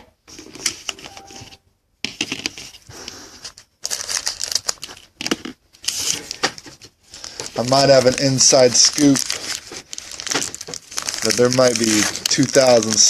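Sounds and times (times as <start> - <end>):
foil wrapper tearing and crinkling: 3.8 - 5.1, 7.2 - 13.0.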